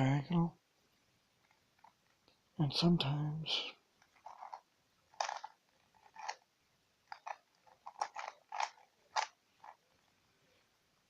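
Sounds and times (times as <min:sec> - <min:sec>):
puzzle cube plastic clacks: 0:04.0 - 0:09.8.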